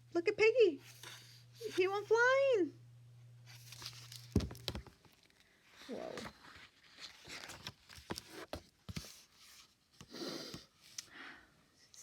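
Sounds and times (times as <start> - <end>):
faint paper rustling: 3.4 - 11.0.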